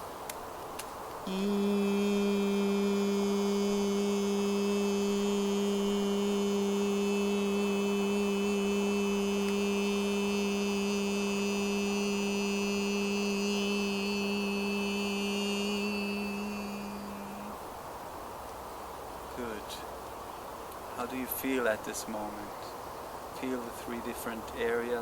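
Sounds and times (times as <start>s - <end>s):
man singing long vowel tone: 1.3s - 17.6s.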